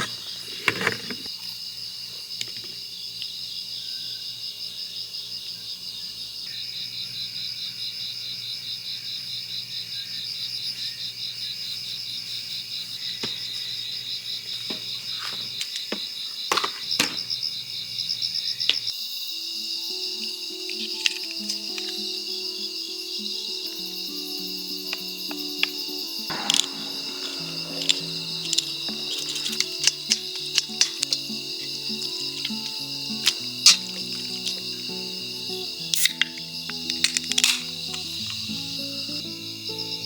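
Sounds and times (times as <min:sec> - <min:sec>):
insects trilling: 0:00.0 - 0:40.0
soft music: 0:19.4 - 0:40.0.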